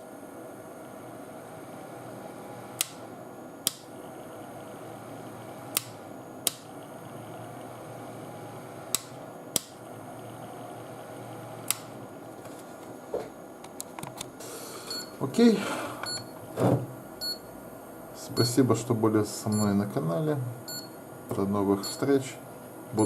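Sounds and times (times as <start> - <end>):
cooling fan whirring: 0.0 - 23.0
power switch clicks: 2.8 - 3.0, 3.6 - 3.9, 5.7 - 6.7, 8.9 - 9.8, 11.6 - 11.9.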